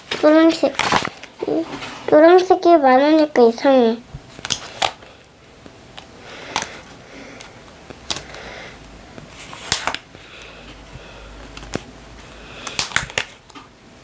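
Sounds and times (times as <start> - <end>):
paper rustling: 0.1 - 2.6, 9.1 - 10.8
stickers clicking and tapping: 4.3 - 5.0, 5.6 - 10.5, 12.6 - 13.7.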